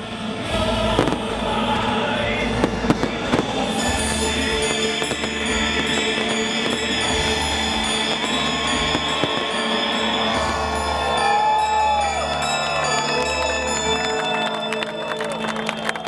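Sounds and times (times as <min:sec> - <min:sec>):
music: 0:00.0 - 0:16.0
fireworks bangs: 0:01.0 - 0:01.3, 0:02.6 - 0:11.7.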